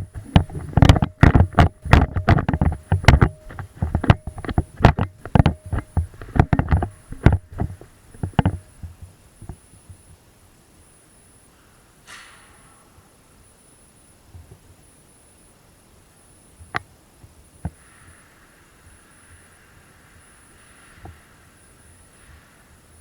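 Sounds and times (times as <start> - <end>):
sharp knocks and thumps: 0.0 - 10.0.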